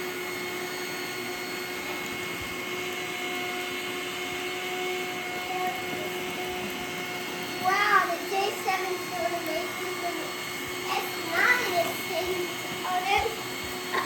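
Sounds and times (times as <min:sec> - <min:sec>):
robot vacuums running: 0:00.0 - 0:14.0
steady whine: 0:05.4 - 0:14.0.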